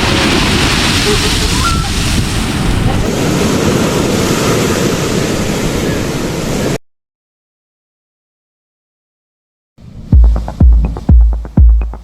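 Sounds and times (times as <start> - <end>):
surf washing over rocks: 0.0 - 6.8.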